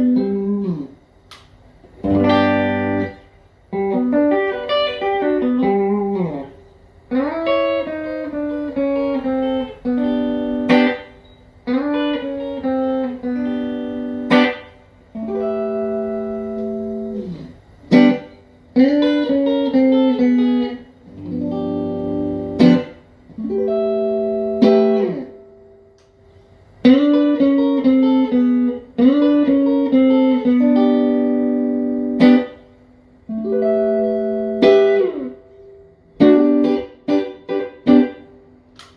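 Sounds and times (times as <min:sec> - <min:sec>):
clean electric guitar chords: 0:00.0 - 0:01.0, 0:02.0 - 0:26.2, 0:26.8 - 0:32.7, 0:33.3 - 0:38.4.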